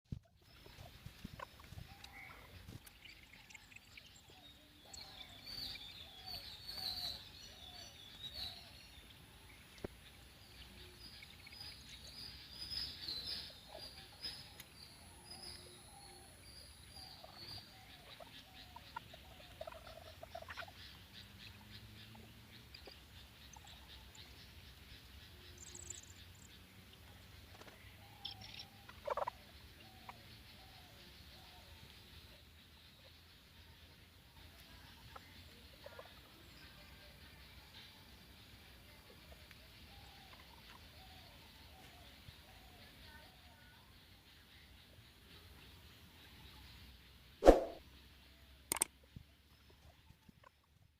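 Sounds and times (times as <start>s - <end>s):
birds chirping and calling: 0.2s - 47.8s.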